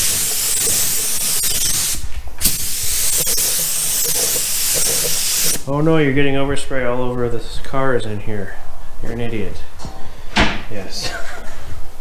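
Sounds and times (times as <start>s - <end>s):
paint spray gun hissing: 0.0s - 5.6s.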